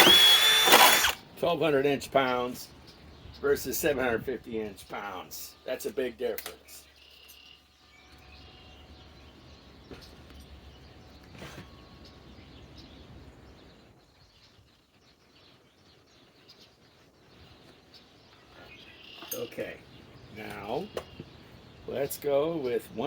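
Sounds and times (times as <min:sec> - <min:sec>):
bird chirps: 0:06.6 - 0:23.0.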